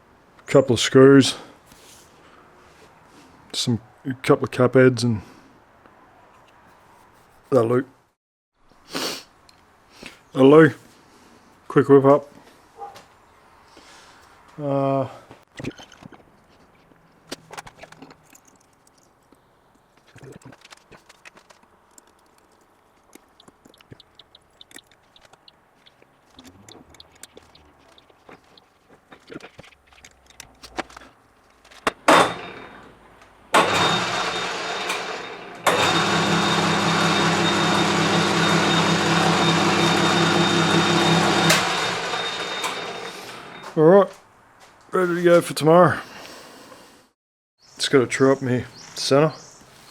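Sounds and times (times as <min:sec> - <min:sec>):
workshop machine motor running: 0:31.9 - 0:43.8.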